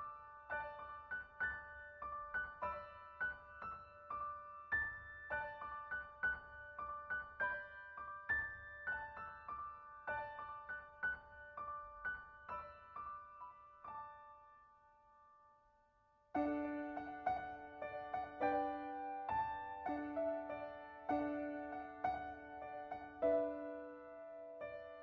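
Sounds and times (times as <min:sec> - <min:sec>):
piano music: 0:16.4 - 0:25.0.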